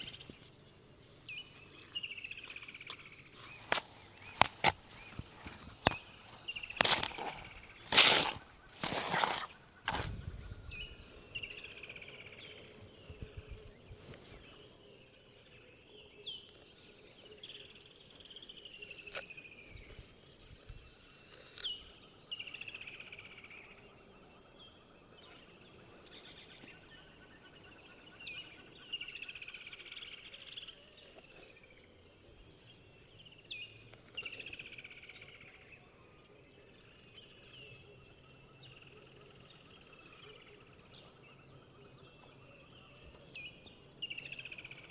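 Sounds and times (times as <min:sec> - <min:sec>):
birds singing downward calls: 0:01.2 - 0:35.9.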